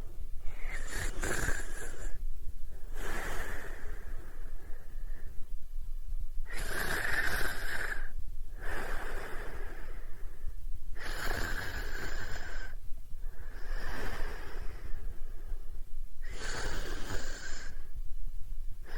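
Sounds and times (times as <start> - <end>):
person snoring: 0.6 - 2.2.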